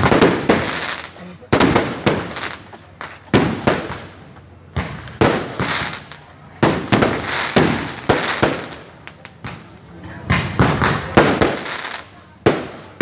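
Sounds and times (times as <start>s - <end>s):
fireworks bangs with rumbling echo: 0.0s - 13.0s.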